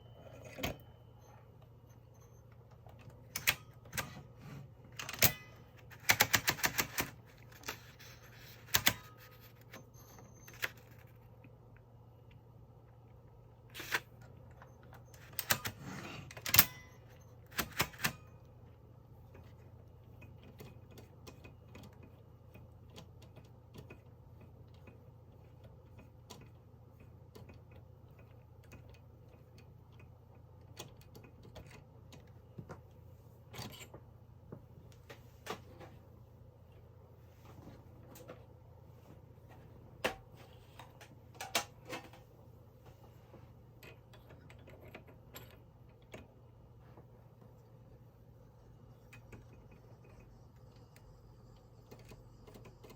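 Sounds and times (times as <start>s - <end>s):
typewriter clicks and clacks: 5.0s - 9.3s, 17.5s - 18.3s.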